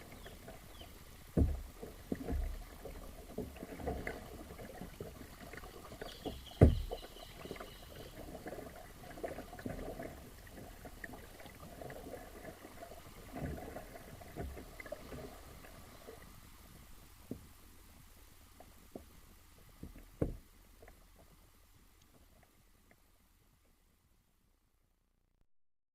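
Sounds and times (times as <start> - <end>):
water splashing against hull: 0.0 - 17.6, 18.4 - 21.4
paddle strokes in water: 0.0 - 21.5.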